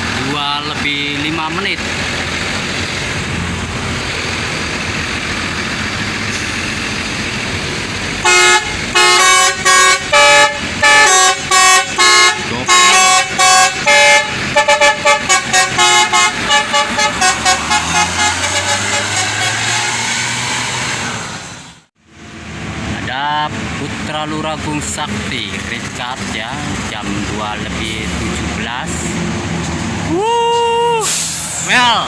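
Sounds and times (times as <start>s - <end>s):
road noise: 0.0s - 32.0s
vehicle engine: 0.0s - 32.0s
bus horn playing a tune: 8.2s - 20.5s.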